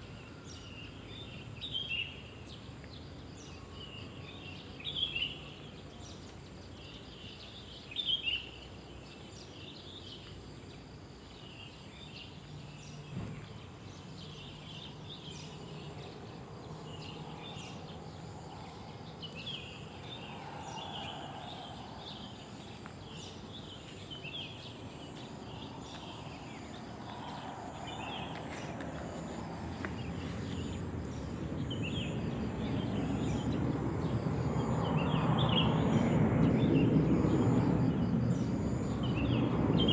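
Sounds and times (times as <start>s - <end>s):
cricket trilling: 6.7s - 39.9s
birds chirping: 11.3s - 36.9s.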